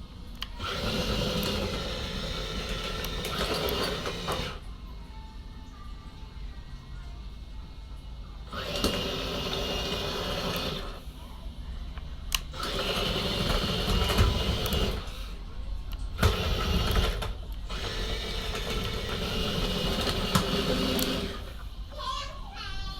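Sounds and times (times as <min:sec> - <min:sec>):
model excavator motors whining: 0:00.4 - 0:04.7, 0:08.4 - 0:11.3, 0:12.3 - 0:15.4, 0:16.1 - 0:21.8.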